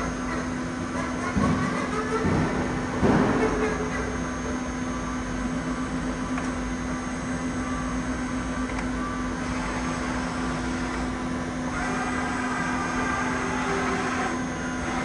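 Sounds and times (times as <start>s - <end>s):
machine hum: 0.0s - 15.0s.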